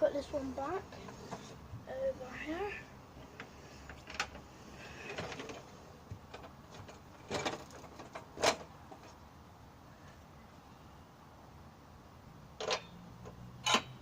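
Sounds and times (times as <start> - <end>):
small bike knocking and rattling: 3.3 - 9.2, 12.6 - 14.0.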